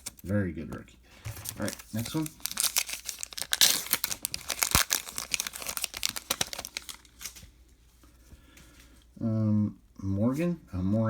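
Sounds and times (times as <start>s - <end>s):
foil wrapper tearing and crinkling: 0.0s - 0.3s, 1.4s - 7.4s.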